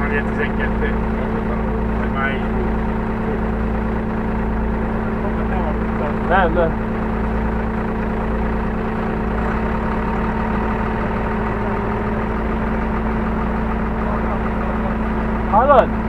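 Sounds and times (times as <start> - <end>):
diesel engine idling: 0.0 - 16.0.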